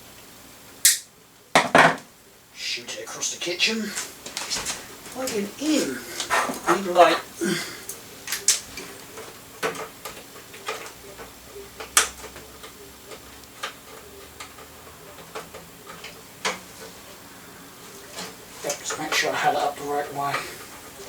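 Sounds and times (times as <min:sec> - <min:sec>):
faint steady hum: 0:00.0 - 0:21.0
plastic parts clicking and tapping: 0:07.9 - 0:16.9.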